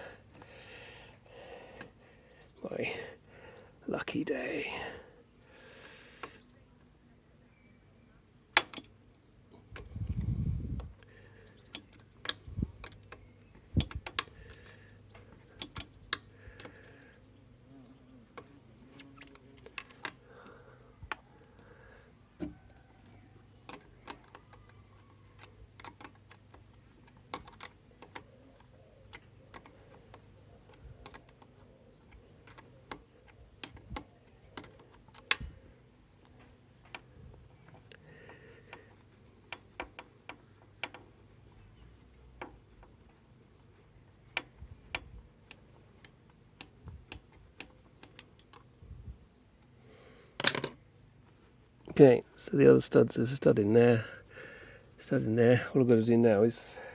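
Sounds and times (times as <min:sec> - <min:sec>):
metallic clicks of hand tools: 0:11.6 - 0:16.9, 0:39.5 - 0:41.1, 0:44.3 - 0:48.6.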